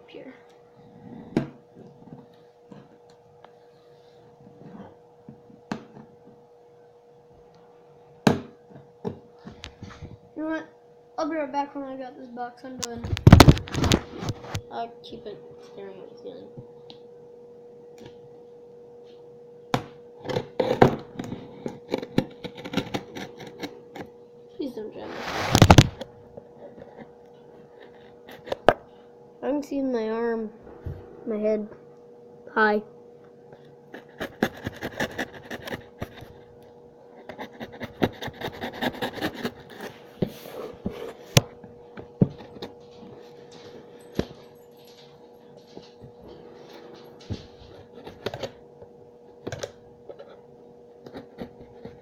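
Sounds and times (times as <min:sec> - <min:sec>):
faint steady hum: 0:00.0 - 0:52.0
scraping and rubbing on cardboard: 0:25.0 - 0:25.9, 0:33.9 - 0:36.4, 0:37.2 - 0:41.3.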